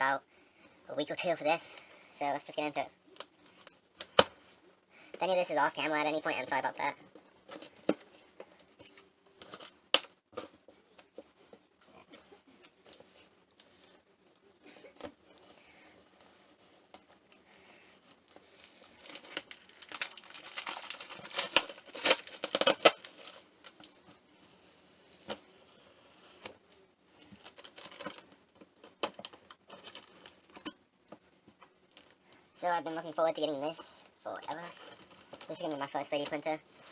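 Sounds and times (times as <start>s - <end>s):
clicks and scratches: 16.1s - 24.2s
packing tape ripping: 18.8s - 23.4s.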